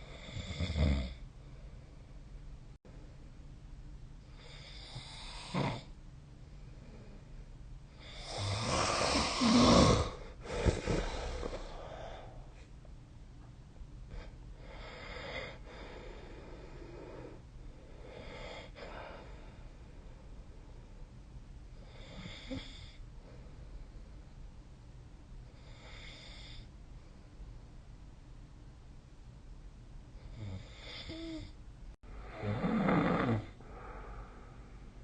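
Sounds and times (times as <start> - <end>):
person snoring: 4.4 - 5.9, 8.0 - 12.5, 32.1 - 34.5.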